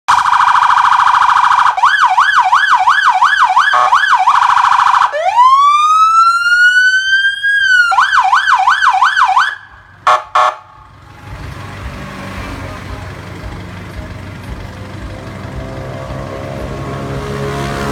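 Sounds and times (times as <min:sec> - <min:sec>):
electronic emergency siren: 0:00.1 - 0:10.7.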